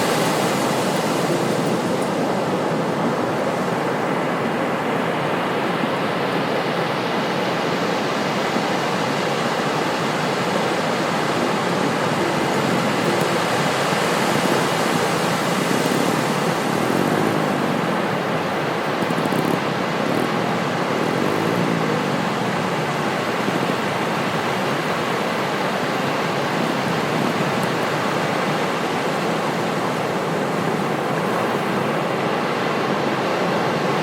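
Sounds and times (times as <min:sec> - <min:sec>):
ocean surf breaking: 0:00.0 - 0:34.0.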